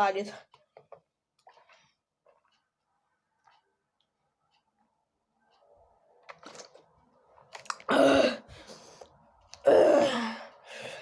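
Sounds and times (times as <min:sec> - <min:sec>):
person groaning: 0:09.6 - 0:10.4.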